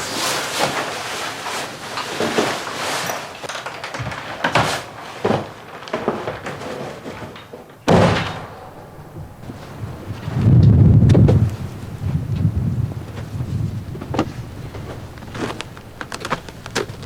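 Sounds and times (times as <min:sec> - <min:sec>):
rustling of things handled: 0:08.4 - 0:17.0
knocks of things handled: 0:13.2 - 0:17.0.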